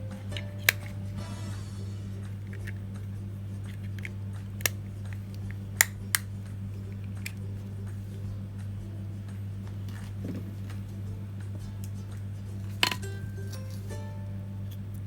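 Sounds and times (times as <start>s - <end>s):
low hum: 0.0s - 15.0s
plastic case clicks and snaps: 0.3s - 1.0s, 3.7s - 6.3s.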